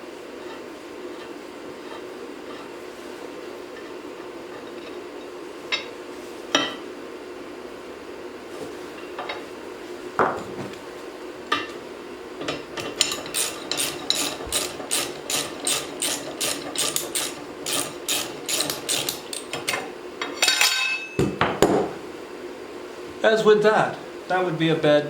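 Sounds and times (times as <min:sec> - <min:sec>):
socket wrench ratchet clicking: 0:13.3 - 0:19.5.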